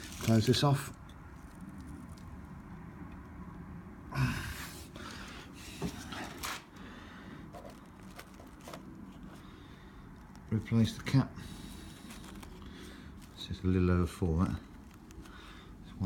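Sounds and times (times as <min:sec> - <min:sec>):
breathy rustle: 0:11.3 - 0:13.5, 0:14.5 - 0:16.0.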